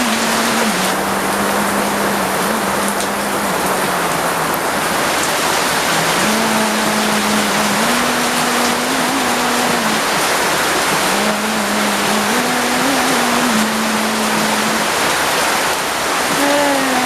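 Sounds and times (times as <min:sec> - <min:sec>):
low humming tone: 0:00.0 - 0:15.1
heavy rain falling: 0:00.0 - 0:17.0.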